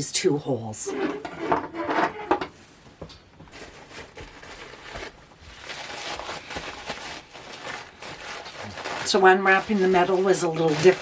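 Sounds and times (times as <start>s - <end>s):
paper rustling and crinkling: 3.4s - 11.0s.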